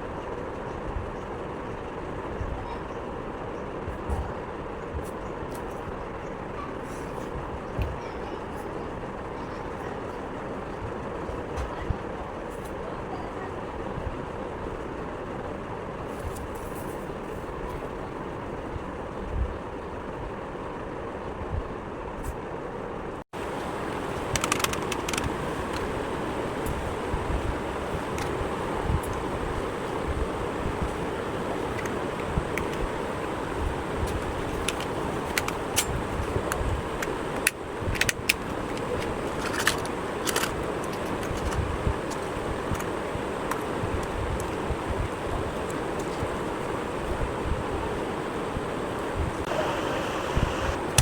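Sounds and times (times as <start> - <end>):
rushing noise with low rumble: 18.6 - 51.0.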